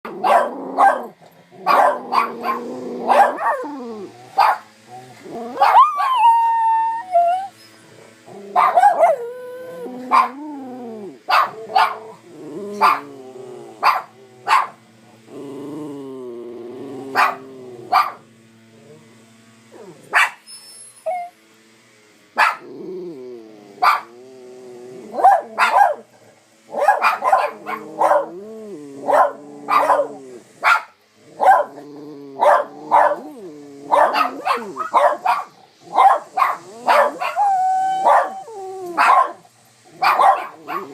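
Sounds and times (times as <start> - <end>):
dog whining: 0.1 - 14.0, 15.3 - 18.2, 20.3 - 21.4, 22.6 - 25.8, 31.4 - 35.2, 36.6 - 39.4
dog barking: 0.2 - 3.7, 4.4 - 4.7, 5.6 - 6.2, 8.6 - 9.2, 10.1 - 10.4, 11.3 - 12.0, 12.8 - 13.1, 13.8 - 14.8, 17.1 - 18.2, 20.1 - 20.4, 22.4 - 22.7, 23.8 - 24.1, 25.2 - 26.1, 26.7 - 28.4, 29.1 - 31.8, 32.4 - 33.2, 33.9 - 37.4, 38.0 - 38.4, 39.0 - 39.4, 40.0 - 40.9.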